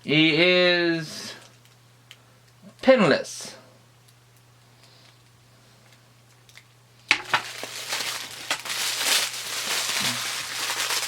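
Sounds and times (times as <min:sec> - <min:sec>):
plastic packaging crinkling: 0:06.4 - 0:11.0.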